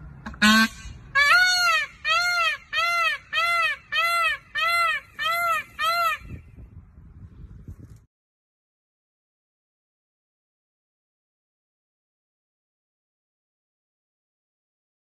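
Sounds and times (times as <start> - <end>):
peacock calling: 0.2 - 6.6.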